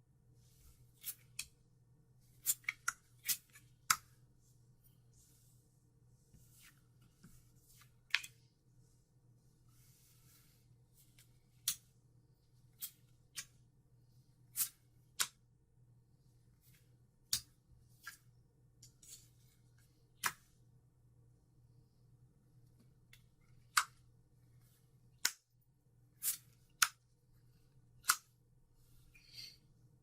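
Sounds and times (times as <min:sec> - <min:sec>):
soft sliding sounds: 0:04.3 - 0:11.3
trading cards snapping and clicking: 0:28.0 - 0:28.3.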